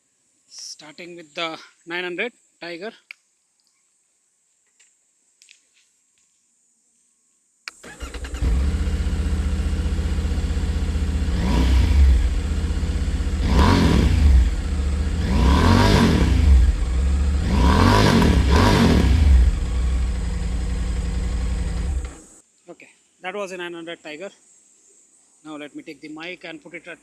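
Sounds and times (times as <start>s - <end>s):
motorcycle engine starting and idling: 7.7s - 22.4s
motorcycle engine revving: 7.8s - 22.4s.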